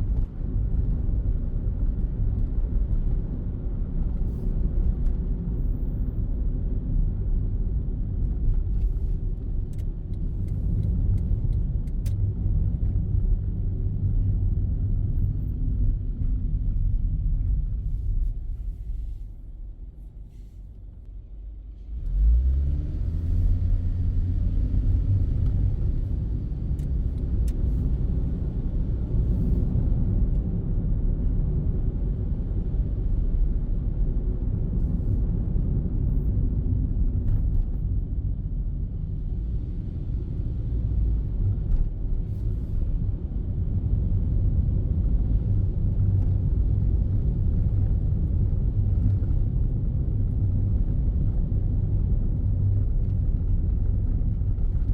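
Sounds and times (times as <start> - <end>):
road noise: 17.9 - 30.8
car engine accelerating: 21.8 - 28.3.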